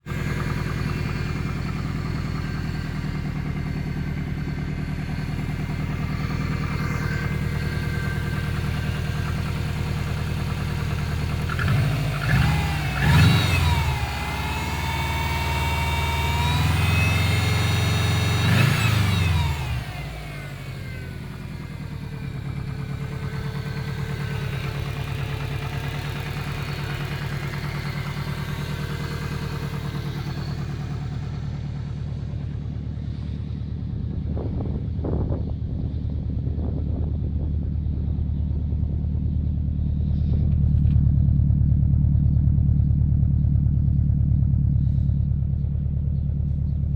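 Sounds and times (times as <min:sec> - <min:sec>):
car engine revving: 0:05.1 - 0:32.6
car engine idling with a knock: 0:39.0 - 0:46.9.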